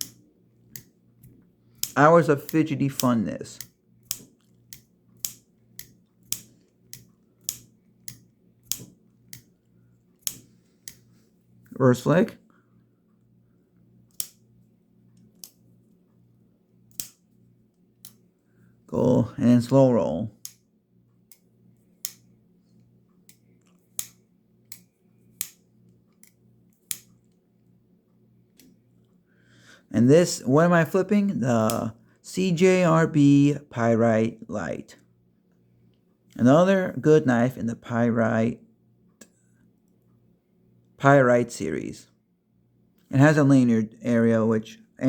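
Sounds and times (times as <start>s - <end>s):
soft metallic clicks: 0.0s - 11.8s, 14.1s - 16.2s, 16.9s - 18.3s, 20.4s - 27.4s.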